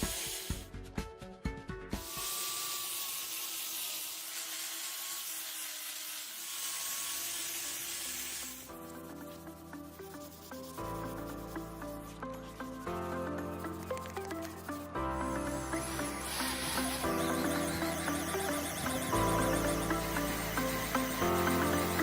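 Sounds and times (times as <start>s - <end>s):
music with held notes: 8.8s - 22.0s.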